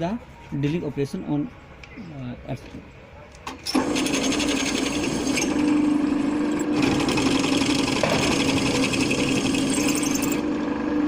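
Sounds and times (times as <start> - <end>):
electric drill running: 3.7 - 10.7.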